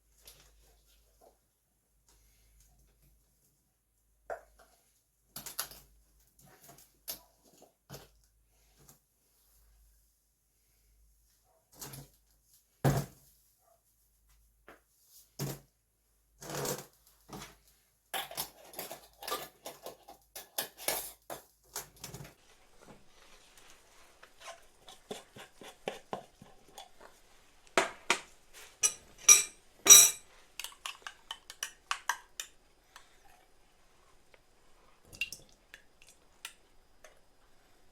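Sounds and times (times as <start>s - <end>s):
dishes and utensils clinking: 28.6s - 32.5s.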